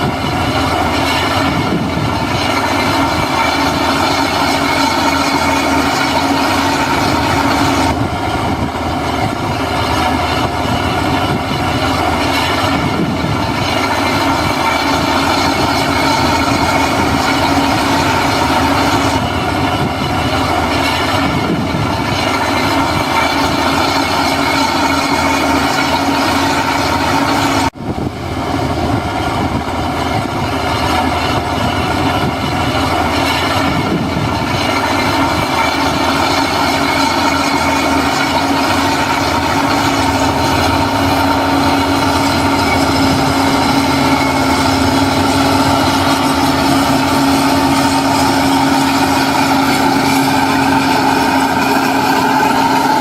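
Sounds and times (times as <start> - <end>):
heavy diesel engine running: 0.0 - 53.0
steady machine whine: 0.0 - 53.0.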